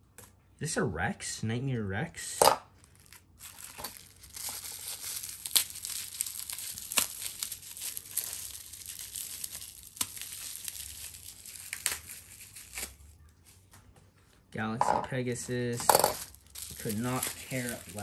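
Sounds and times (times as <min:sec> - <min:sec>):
plastic packaging crinkling: 0:02.7 - 0:13.7, 0:15.8 - 0:18.0.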